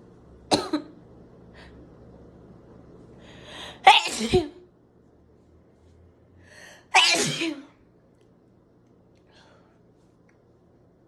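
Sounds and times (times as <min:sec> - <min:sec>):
woman sneezing: 0:03.8 - 0:04.6, 0:06.9 - 0:07.7.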